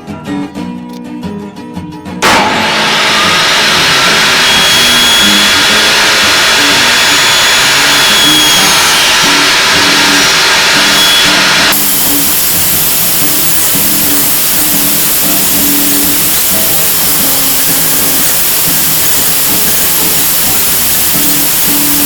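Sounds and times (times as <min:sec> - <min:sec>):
acoustic guitar music: 0:00.0 - 0:02.2
woodworking power tool running: 0:02.2 - 0:22.0.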